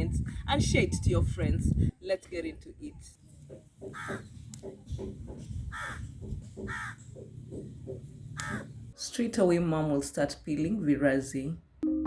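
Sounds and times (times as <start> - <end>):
crow cawing: 3.8 - 4.4, 5.6 - 8.9.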